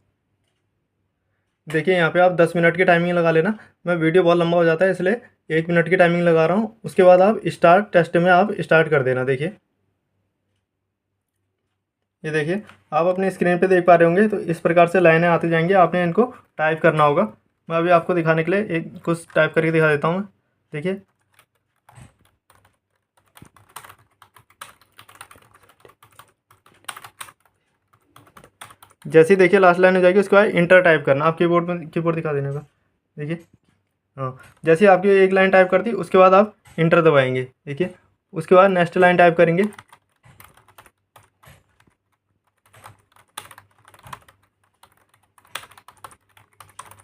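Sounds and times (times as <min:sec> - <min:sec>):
keyboard typing: 0:14.5 - 0:20.2, 0:20.8 - 0:30.3, 0:38.4 - 0:47.0.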